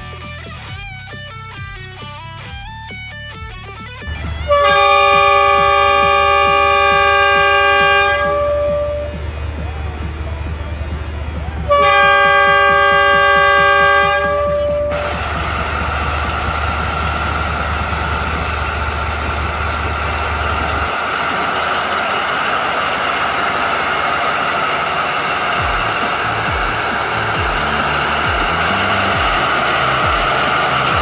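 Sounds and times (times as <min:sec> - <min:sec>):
model train low hum: 0:04.0 - 0:31.0
steady rushing noise: 0:04.1 - 0:31.0
toy train horn chord: 0:04.2 - 0:09.4, 0:11.7 - 0:15.3, 0:25.6 - 0:31.0.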